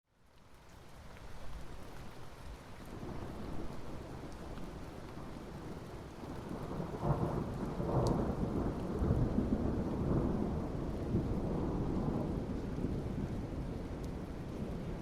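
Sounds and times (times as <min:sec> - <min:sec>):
steady rain: 0:00.1 - 0:15.0
thunder rumbling: 0:06.3 - 0:15.0.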